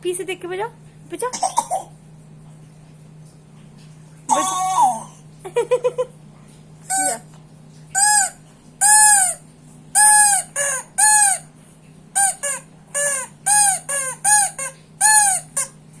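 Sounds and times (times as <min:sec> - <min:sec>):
toy whistle squeaky hoots: 0:08.0 - 0:09.4, 0:10.0 - 0:11.5, 0:12.2 - 0:15.8.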